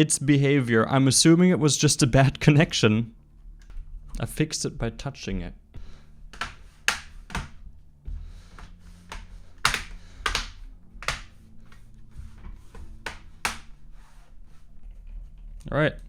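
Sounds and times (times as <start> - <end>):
plastic clicks and taps on laptop: 6.3 - 7.6, 8.6 - 11.8, 12.7 - 13.7.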